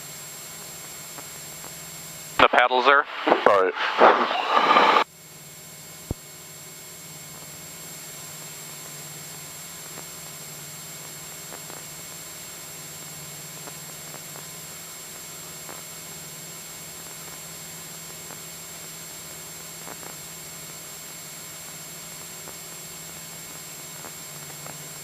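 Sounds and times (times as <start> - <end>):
airplane engine droning: 2.4 - 5.0.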